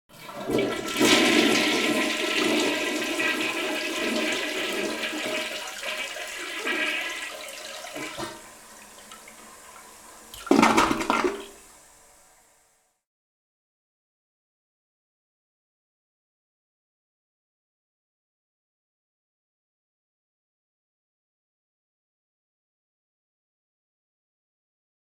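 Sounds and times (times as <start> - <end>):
toilet flushing: 0.1 - 12.9.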